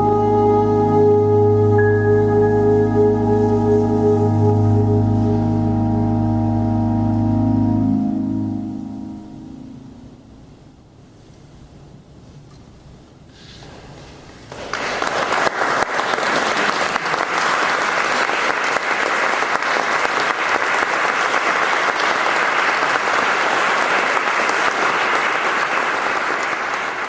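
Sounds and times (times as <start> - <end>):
audience applauding: 14.5 - 27.0.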